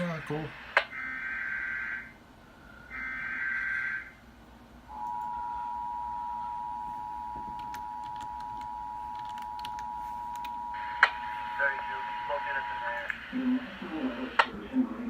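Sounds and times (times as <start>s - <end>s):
two-tone attention alarm: 2.9s - 4.2s, 4.9s - 12.8s.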